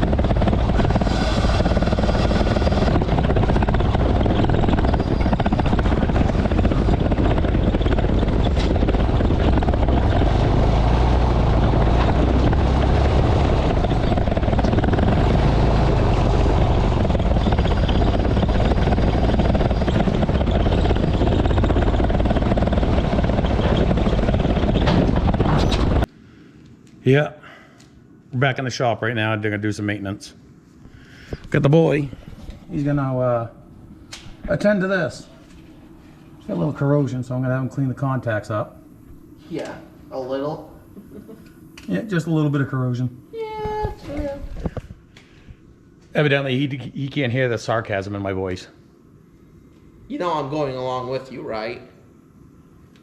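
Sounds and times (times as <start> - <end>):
road noise: 0.0 - 26.1
truck engine drone: 0.0 - 26.1.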